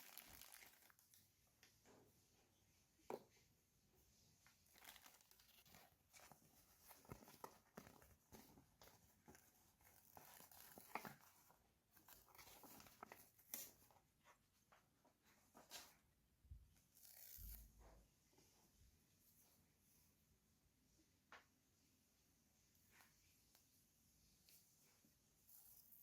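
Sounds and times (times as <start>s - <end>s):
packaging crinkling and rustling: 0.0s - 1.2s, 4.6s - 13.8s.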